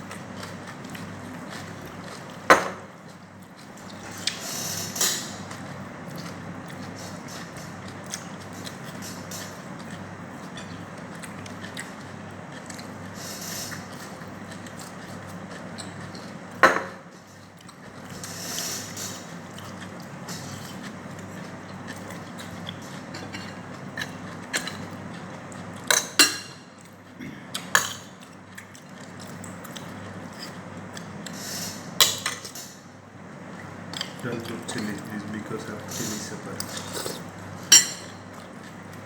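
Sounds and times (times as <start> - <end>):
steady low hum: 0.0 - 39.0
cutlery clinking on a plate: 37.7 - 38.2.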